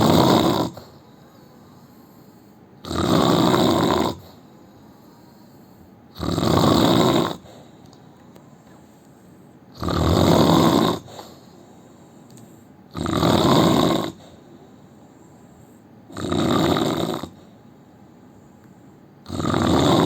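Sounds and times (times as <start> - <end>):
man snoring loudly: 0.0 - 1.0, 2.8 - 4.4, 6.1 - 7.4, 9.8 - 11.1, 12.9 - 14.2, 16.1 - 17.4, 19.2 - 20.0
quiet breathing: 0.0 - 2.8, 4.1 - 6.2, 7.2 - 9.8, 11.0 - 13.0, 14.0 - 16.1, 17.2 - 19.3.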